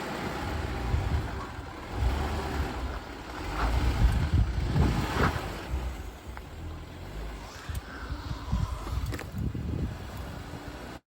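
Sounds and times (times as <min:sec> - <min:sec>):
vehicle engine rumble: 0:00.0 - 0:11.0
wind buffeting microphone: 0:00.5 - 0:06.1, 0:07.4 - 0:10.8.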